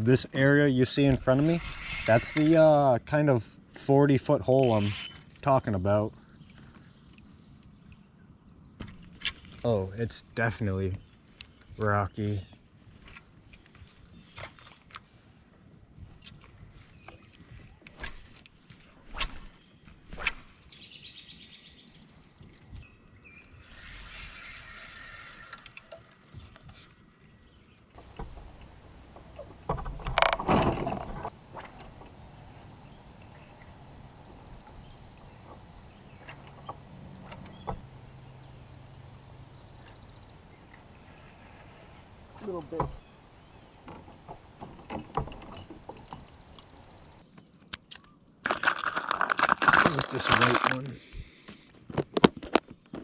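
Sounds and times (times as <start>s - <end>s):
fishing gear clicking and knocking: 4.5s - 5.3s, 28.0s - 32.2s, 47.7s - 50.9s
fishing reel clicking and whirring: 4.6s - 5.2s.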